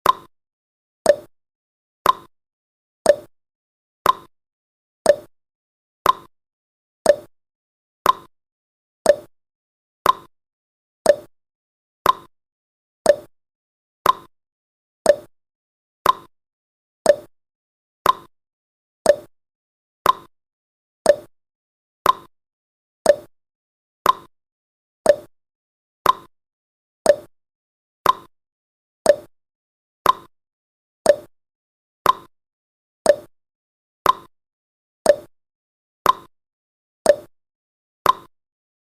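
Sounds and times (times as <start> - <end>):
timer ticking: 0.0 - 0.3, 1.1 - 1.3, 2.0 - 2.3, 3.1 - 3.3, 4.0 - 4.3, 5.1 - 5.3, 6.0 - 6.3, 7.0 - 7.3, 8.0 - 8.3, 9.0 - 9.3, 10.0 - 10.3, 11.0 - 11.3, 12.0 - 12.3, 13.0 - 13.3, 14.0 - 14.3, 15.1 - 15.3, 16.0 - 16.3, 17.0 - 17.3, 18.0 - 18.3, 19.1 - 19.3, 20.0 - 20.3, 21.0 - 21.3, 22.0 - 22.3, 23.0 - 23.3, 24.0 - 24.3, 25.0 - 25.3, 26.0 - 26.3, 27.1 - 27.3, 28.0 - 28.3, 29.1 - 29.3, 30.0 - 30.3, 31.1 - 31.3, 32.1 - 32.3, 33.1 - 33.3, 34.1 - 34.3, 35.1 - 35.3, 36.1 - 36.3, 37.1 - 37.3, 38.1 - 38.3.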